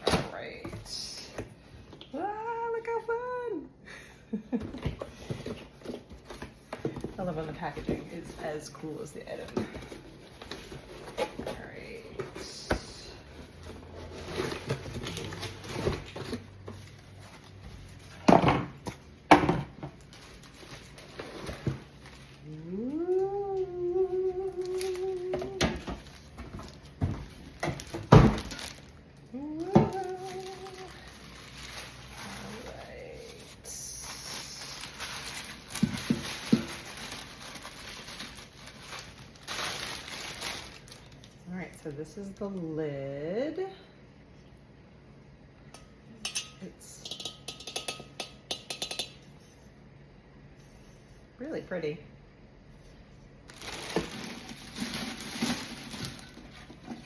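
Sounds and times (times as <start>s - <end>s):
cardboard and paper rustling: 4.8s - 18.3s, 24.4s - 29.0s, 29.6s - 41.7s, 53.5s - 57.0s
packaging rustling and knocking: 25.2s - 28.9s, 35.0s - 41.0s, 53.5s - 57.0s.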